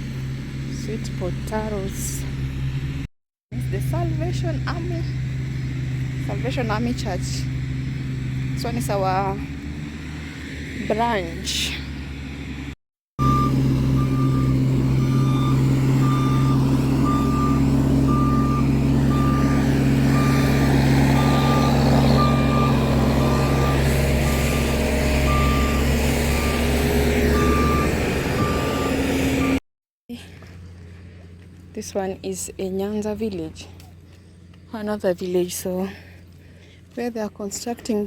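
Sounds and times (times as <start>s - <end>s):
heavy vehicle engine humming: 0.0s - 38.0s
reversing alarm beeping: 13.2s - 29.6s.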